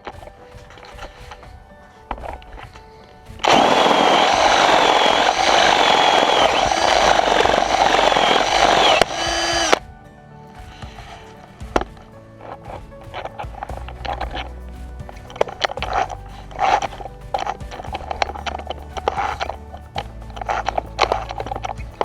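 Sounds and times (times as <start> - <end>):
faint background music: 0.0 - 22.0
cordless drill whining: 3.5 - 9.8.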